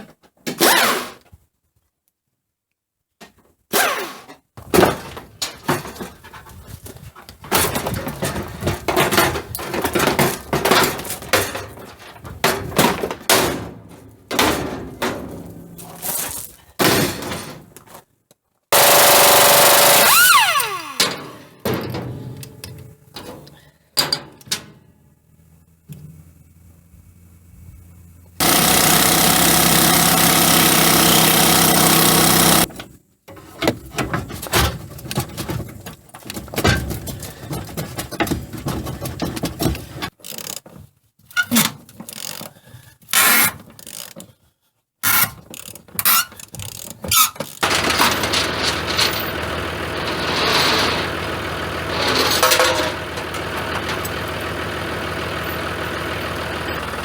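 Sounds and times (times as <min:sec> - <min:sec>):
vehicle engine running: 0:24.6 - 0:32.8, 0:47.6 - 0:57.0.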